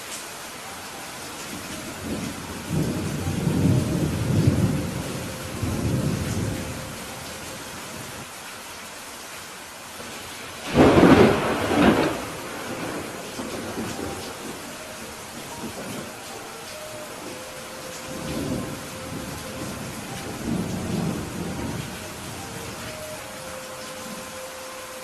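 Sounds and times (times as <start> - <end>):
steady rain: 0.0 - 25.0
low rolling thunder rumble: 1.6 - 8.2, 10.1 - 16.3, 17.0 - 24.4
loud thunderclap: 10.6 - 14.6.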